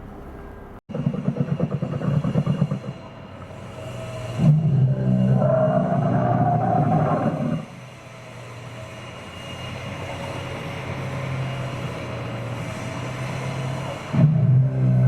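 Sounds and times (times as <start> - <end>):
low mechanical hum: 0.0 - 15.0
recorded dinosaur roar: 4.4 - 7.7.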